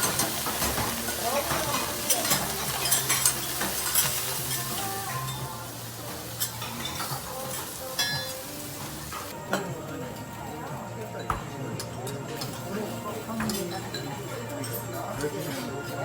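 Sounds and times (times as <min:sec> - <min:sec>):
metal spatulas clinking: 0:00.0 - 0:05.4
food sizzling on a griddle: 0:00.0 - 0:09.4.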